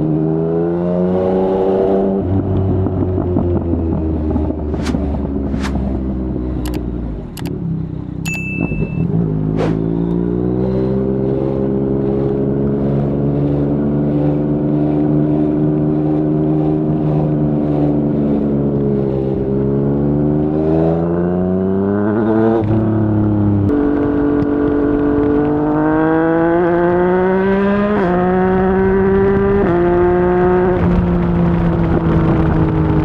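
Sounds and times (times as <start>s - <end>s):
motorcycle engine revving: 0.0s - 33.0s.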